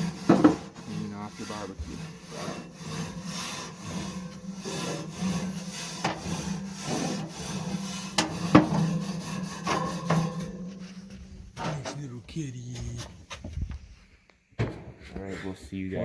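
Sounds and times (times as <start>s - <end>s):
grill grate being scraped: 0.0s - 12.1s.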